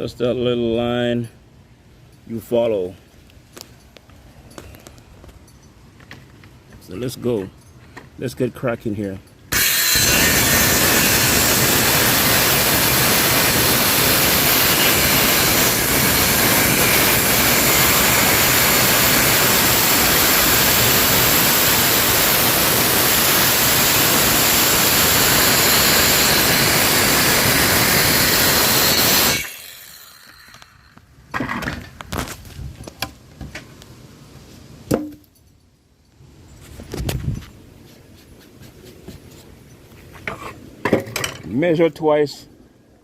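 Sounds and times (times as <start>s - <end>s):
power saw cutting wood: 9.5s - 31.0s.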